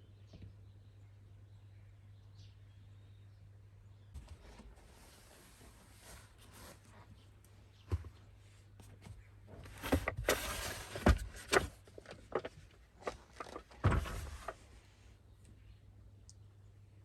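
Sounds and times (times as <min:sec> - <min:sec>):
rustling: 0:08.8 - 0:14.7
objects knocking and clunking: 0:09.0 - 0:14.6.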